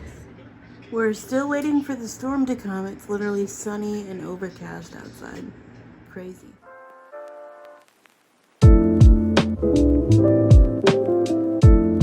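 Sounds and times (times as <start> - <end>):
kick drum: 8.6 - 11.0, 11.6 - 12.0
held chords: 8.6 - 12.0
moving bass line: 8.6 - 12.0.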